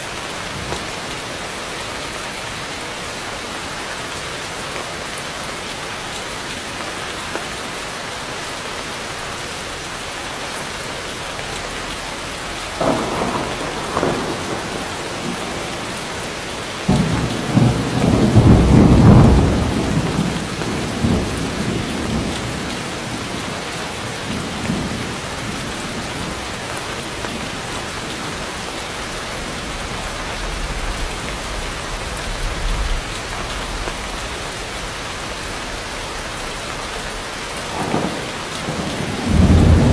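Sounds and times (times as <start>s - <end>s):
heavy rain on foliage: 0.0s - 39.9s
thunder rumbling: 12.6s - 39.9s
thunder crack: 12.8s - 23.2s, 37.7s - 39.9s.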